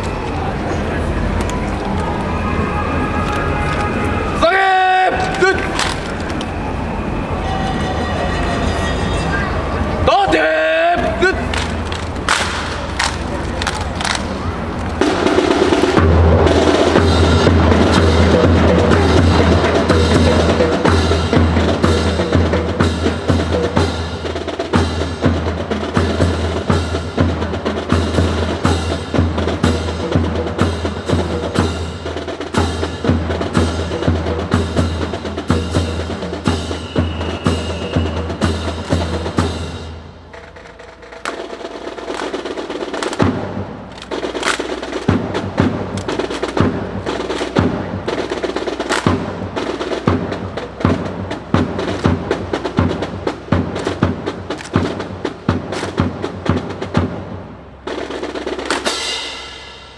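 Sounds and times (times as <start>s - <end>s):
percussion-heavy music: 0.0s - 59.9s
sharp clacks and knocks: 11.0s - 17.0s, 38.7s - 57.0s, 57.9s - 59.0s.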